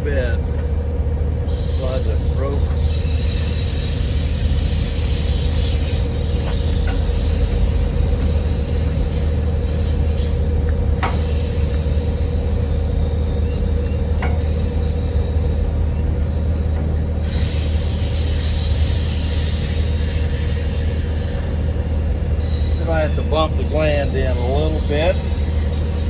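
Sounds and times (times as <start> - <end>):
low mechanical hum: 0.0 - 19.2.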